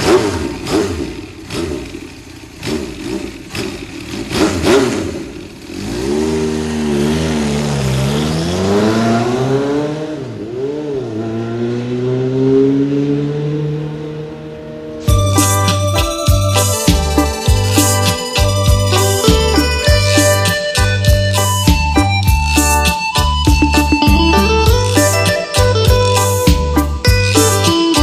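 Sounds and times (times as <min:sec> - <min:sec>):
synthesized engine sputtering and revving: 0:00.0 - 0:15.1.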